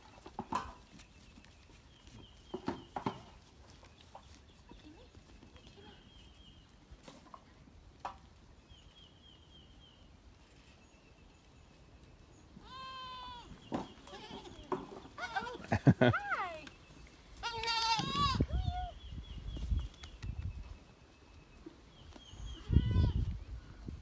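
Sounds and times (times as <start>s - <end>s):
goat bleating: 12.6s - 15.8s, 17.4s - 18.4s.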